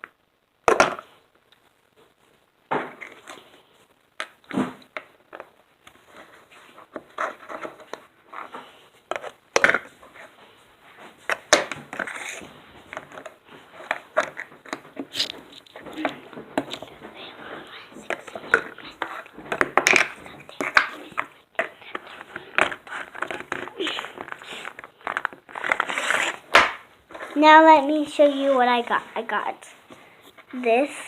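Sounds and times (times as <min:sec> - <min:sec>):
plastic containers clicking and knocking: 0:09.1 - 0:10.0, 0:11.2 - 0:25.9.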